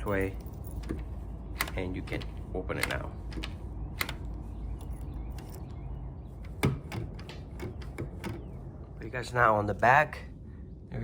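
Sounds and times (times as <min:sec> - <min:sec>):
door lock clicks and rattles: 0:00.0 - 0:05.8, 0:06.4 - 0:08.5.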